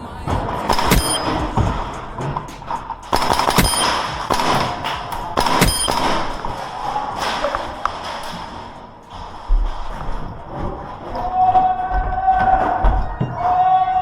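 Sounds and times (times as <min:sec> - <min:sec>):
airsoft gun shots: 0:00.3 - 0:09.2.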